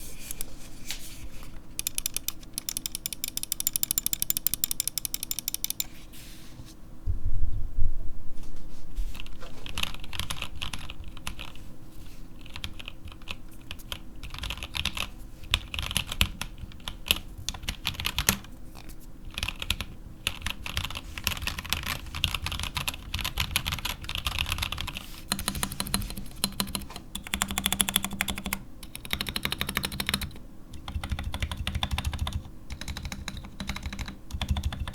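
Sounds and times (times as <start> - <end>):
mechanical keyboard clacks: 1.8 - 5.9, 9.7 - 11.6, 12.4 - 18.5, 19.3 - 34.9.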